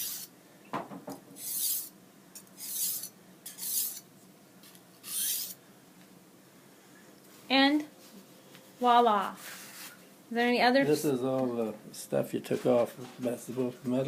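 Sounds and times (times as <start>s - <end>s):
knife rasping on sharpening stone: 1.4s - 1.9s, 2.6s - 4.0s, 5.0s - 5.6s.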